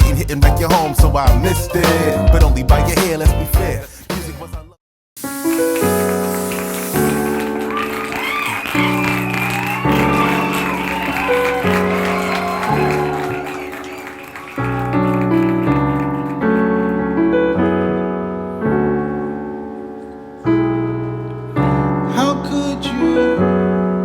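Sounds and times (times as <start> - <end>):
piano chords: 0.0 - 3.8, 5.2 - 24.0.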